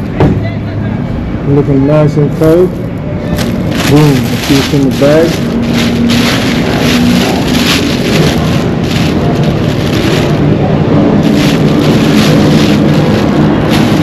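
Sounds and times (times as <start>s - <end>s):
low rumble: 3.4s - 14.0s
paper bag rustling: 3.4s - 14.0s.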